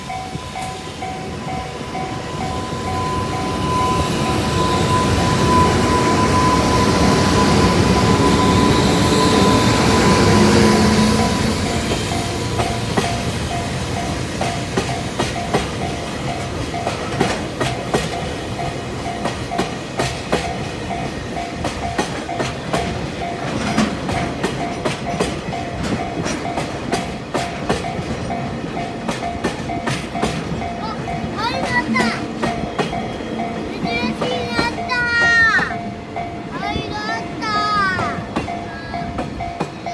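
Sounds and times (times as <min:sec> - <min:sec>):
crossing warning bell ringing: 0:00.0 - 0:39.9
electric locomotive running: 0:00.0 - 0:39.9
wagon wheels clicking over rail joints: 0:21.6 - 0:35.7.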